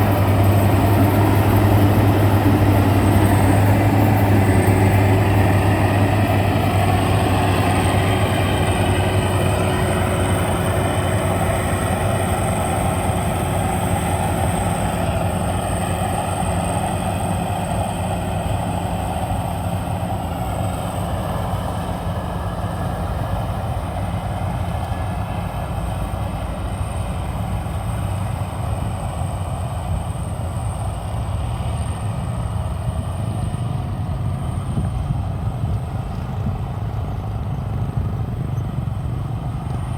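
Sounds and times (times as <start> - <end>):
harvester engine hum: 0.0 - 39.9.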